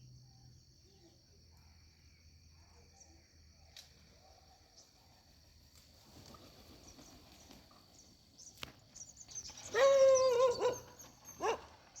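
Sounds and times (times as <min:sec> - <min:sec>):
faint insects: 0:00.0 - 0:12.0
peacock calling: 0:09.3 - 0:11.8.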